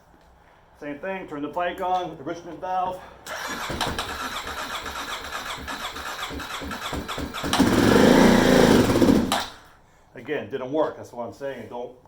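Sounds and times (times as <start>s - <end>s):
motorcycle engine cranking: 3.3s - 9.7s.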